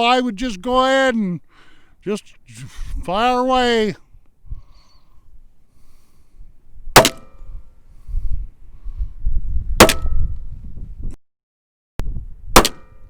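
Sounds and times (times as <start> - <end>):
wind rumble on microphone: 2.8 - 3.1, 4.0 - 5.6, 6.3 - 11.2, 12.0 - 13.0.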